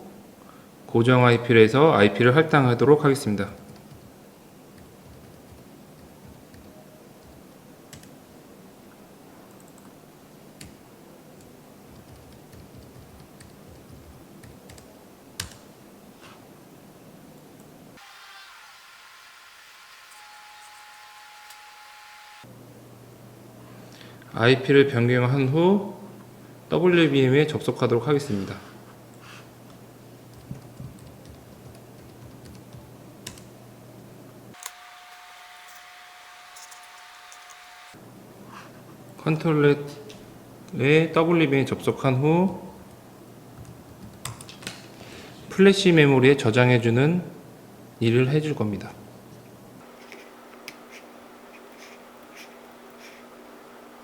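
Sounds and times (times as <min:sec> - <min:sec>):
low room hum: 0:00.0 - 0:54.0
keyboard keystrokes and clicks: 0:11.4 - 0:15.6, 0:30.3 - 0:33.5.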